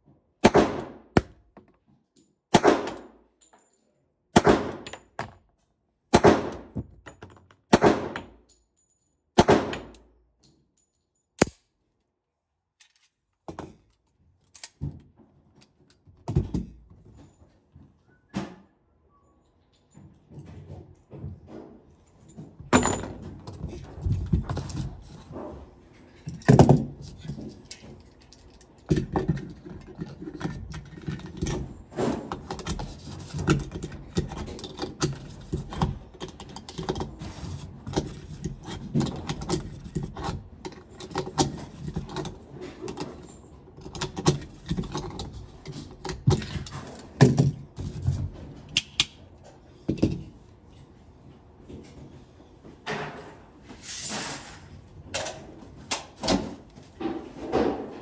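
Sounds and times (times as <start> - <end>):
muffled gunshots: 2.5 - 3.0.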